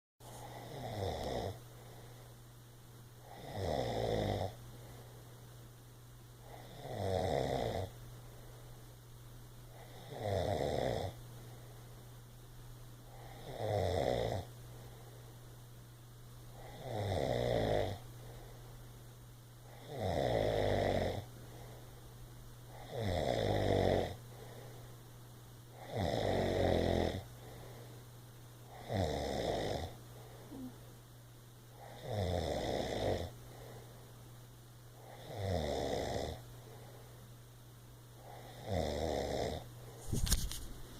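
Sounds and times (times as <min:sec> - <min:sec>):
loud snores: 0:00.5 - 0:01.6, 0:03.2 - 0:04.6, 0:06.5 - 0:07.9, 0:09.8 - 0:11.2, 0:13.1 - 0:14.5, 0:16.6 - 0:18.0, 0:19.7 - 0:21.3, 0:22.7 - 0:24.2, 0:25.8 - 0:27.3, 0:28.7 - 0:30.7, 0:31.8 - 0:33.4, 0:35.0 - 0:36.4, 0:38.2 - 0:39.7.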